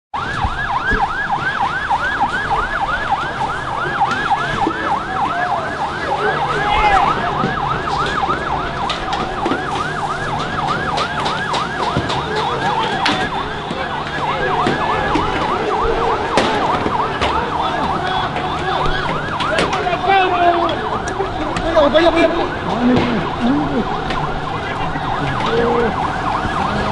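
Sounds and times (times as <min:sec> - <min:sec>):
police siren yelping: 0:00.2 - 0:26.9
second siren gliding: 0:00.2 - 0:26.9
sharp clicks and knocks: 0:07.4 - 0:19.9.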